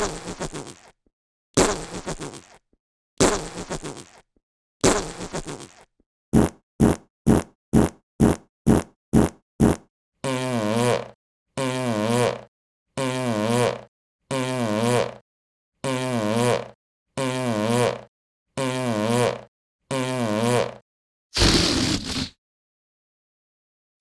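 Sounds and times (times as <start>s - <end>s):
fart sounds: 0.0s - 1.0s, 1.6s - 2.6s, 3.2s - 15.2s, 15.8s - 20.8s, 21.4s - 22.4s.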